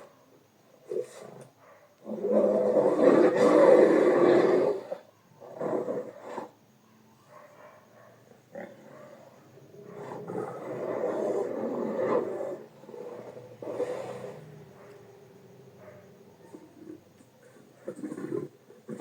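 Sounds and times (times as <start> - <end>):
bear growling: 8.5 - 15.6, 16.4 - 19.0.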